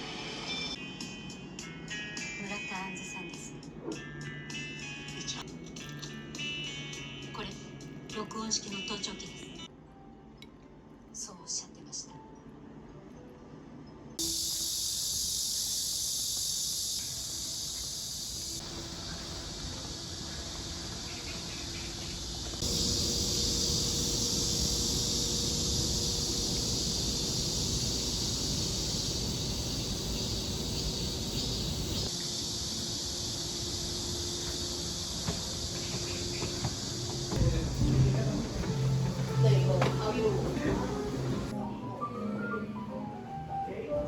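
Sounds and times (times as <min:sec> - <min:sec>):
high-pitched insect chorus: 0:14.2 - 0:41.5.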